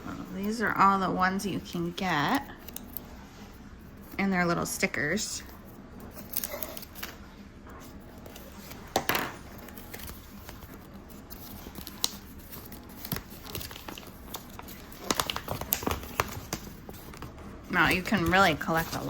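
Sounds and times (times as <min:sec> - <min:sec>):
wrapper crinkling and tearing: 0:06.1 - 0:07.2, 0:08.2 - 0:19.0.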